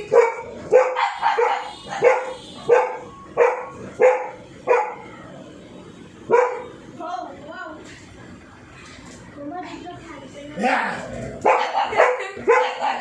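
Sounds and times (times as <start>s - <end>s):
dog barking: 0.1s - 5.1s, 6.2s - 6.8s, 11.4s - 13.0s.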